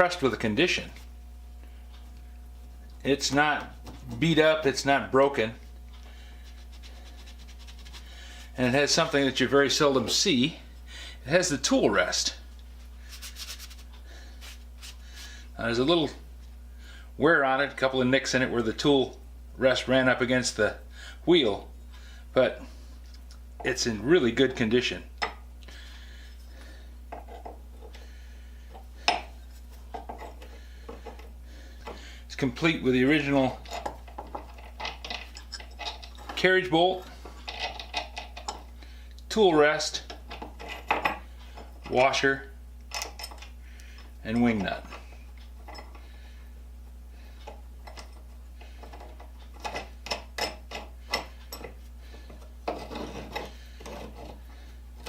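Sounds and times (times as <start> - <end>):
steady low hum: 0.0 - 55.0
metal parts clinking and scraping: 33.5 - 36.5, 37.2 - 38.6, 47.8 - 54.5.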